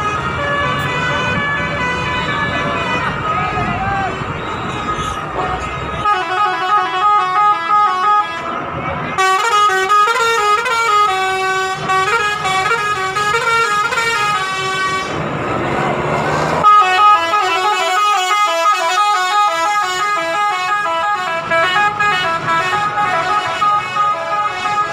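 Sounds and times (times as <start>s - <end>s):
multi-tone bus horn tune: 0.0s - 15.2s, 16.6s - 24.9s
rushing noise: 14.6s - 16.7s.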